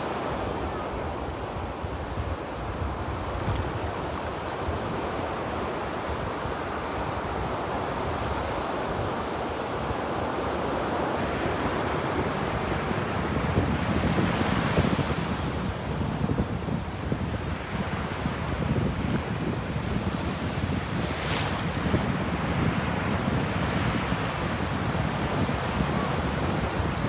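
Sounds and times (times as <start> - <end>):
ocean waves breaking on beach: 0.0 - 27.0.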